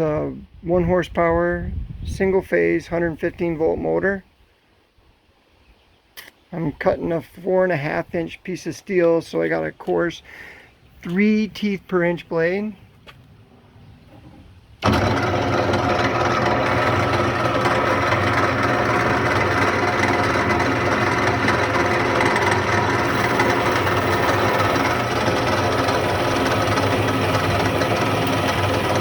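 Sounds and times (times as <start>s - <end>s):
metal-cutting bandsaw running: 14.8s - 29.0s.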